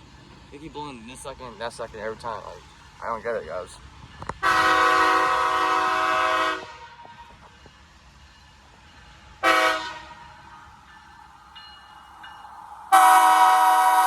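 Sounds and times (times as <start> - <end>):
locomotive air horn chord: 4.4 - 7.0, 9.4 - 10.2, 12.9 - 14.0.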